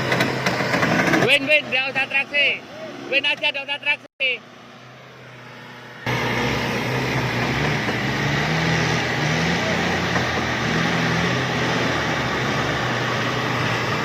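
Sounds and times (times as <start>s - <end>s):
vehicle engine running: 4.4s - 14.0s.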